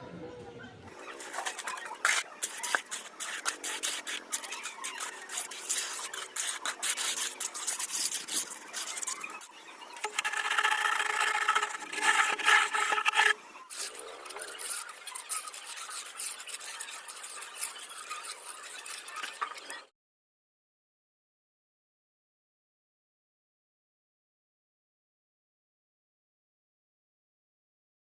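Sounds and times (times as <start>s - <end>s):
hand tool scraping concrete: 1.0s - 19.8s.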